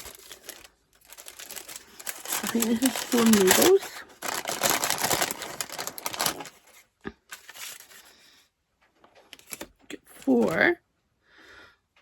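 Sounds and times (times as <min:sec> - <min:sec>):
packaging crinkling: 0:00.0 - 0:08.2, 0:09.2 - 0:10.6.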